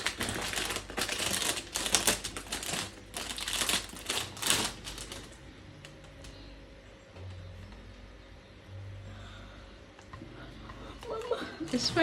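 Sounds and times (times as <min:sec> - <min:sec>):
plastic wrapping crinkling: 0:00.0 - 0:05.4.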